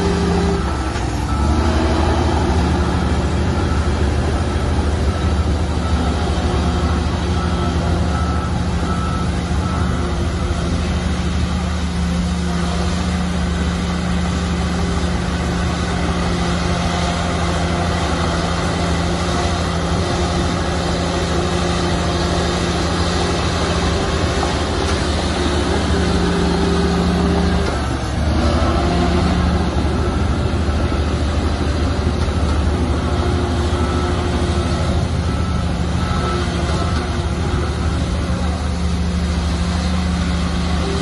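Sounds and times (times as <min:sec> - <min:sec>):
heavy diesel machinery running: 0:00.0 - 0:41.0.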